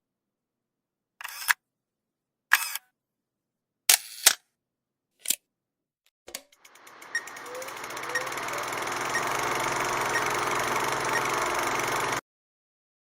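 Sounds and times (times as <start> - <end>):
camera shutter clicking: 3.9 - 4.4.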